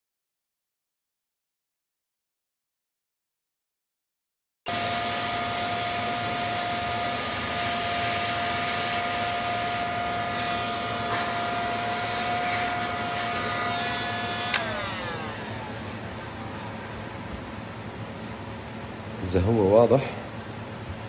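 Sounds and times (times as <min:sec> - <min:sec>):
heat gun fan whine: 0:04.7 - 0:21.0
heat gun switch click: 0:14.3 - 0:15.1.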